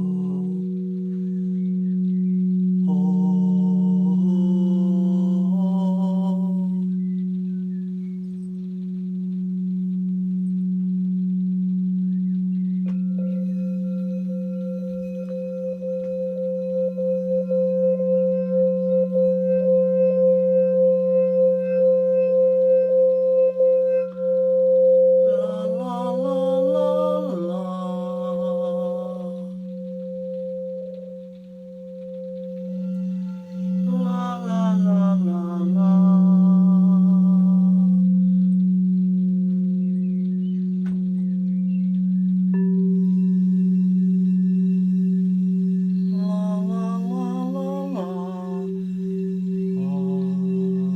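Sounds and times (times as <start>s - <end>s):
person humming: 0.0s - 1.0s, 2.8s - 7.1s, 25.3s - 29.9s, 32.9s - 38.4s, 46.0s - 50.9s
higher singing bowl ringing: 0.0s - 50.9s
steady two-tone humming drone: 0.0s - 50.9s
wavering hum: 0.0s - 50.9s.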